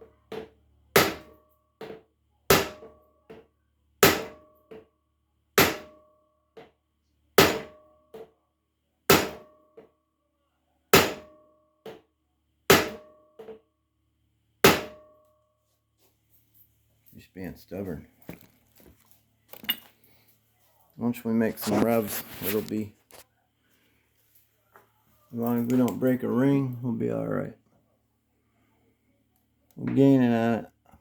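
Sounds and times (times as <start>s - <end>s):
hammer striking metal: 0.3s - 3.4s, 4.0s - 4.9s, 5.6s - 6.1s, 7.4s - 8.3s, 9.1s - 9.6s, 11.0s - 12.0s, 12.7s - 13.6s, 14.6s - 15.2s.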